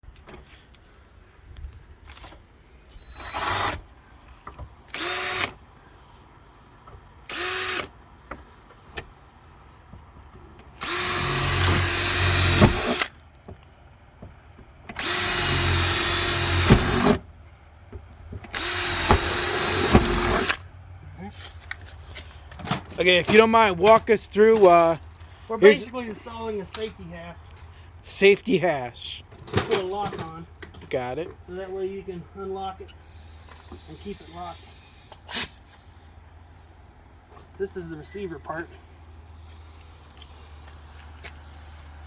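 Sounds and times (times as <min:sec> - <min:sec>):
power drill running: 0:03.0 - 0:03.8, 0:04.9 - 0:05.6, 0:07.3 - 0:07.9, 0:10.8 - 0:13.1, 0:15.0 - 0:17.2, 0:18.5 - 0:20.6
drill clicks: 0:03.1 - 0:03.8, 0:04.9 - 0:05.6, 0:07.3 - 0:07.9, 0:10.7 - 0:13.1, 0:14.9 - 0:17.3, 0:18.5 - 0:20.6.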